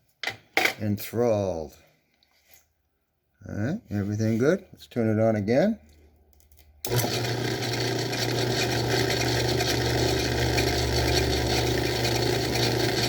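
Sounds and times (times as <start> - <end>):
drill cutting workpiece: 6.9 - 13.0
lathe motor humming: 6.9 - 13.0.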